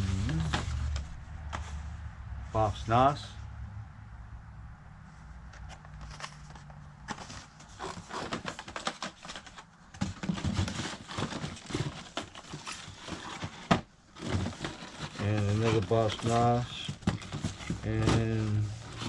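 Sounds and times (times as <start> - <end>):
plastic blister packs clicking and crinkling: 5.6 - 18.4.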